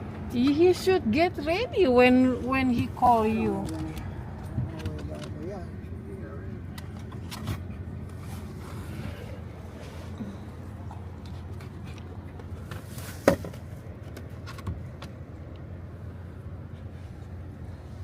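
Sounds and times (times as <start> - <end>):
street traffic rumble: 0.0 - 18.0.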